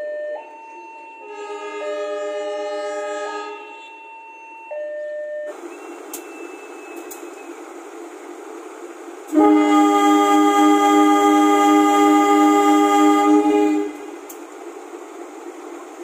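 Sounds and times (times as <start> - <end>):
train air horn blasts: 1.2 - 3.9, 9.3 - 14.4.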